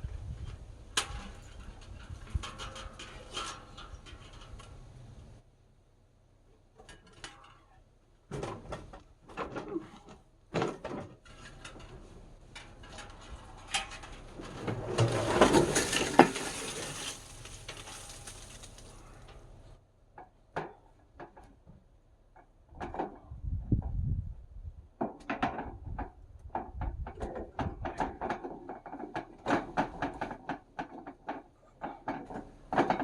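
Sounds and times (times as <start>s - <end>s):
scraping and rattling: 0.3s - 5.2s, 6.8s - 19.8s
metal objects knocking and clattering: 8.3s - 18.6s, 25.0s - 33.0s.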